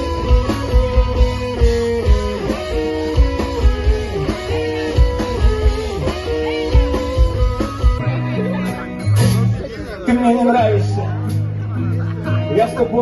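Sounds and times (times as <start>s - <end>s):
steady kick drum beat: 0.0s - 8.1s
bass: 0.0s - 13.0s
electric guitar bent notes: 0.0s - 13.0s.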